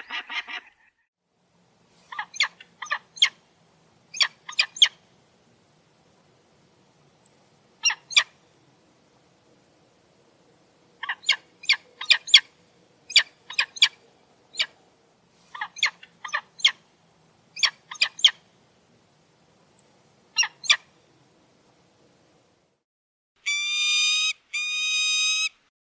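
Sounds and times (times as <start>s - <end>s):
falcon calling: 4.2s - 5.0s, 11.0s - 12.5s, 13.1s - 14.7s, 17.6s - 18.4s.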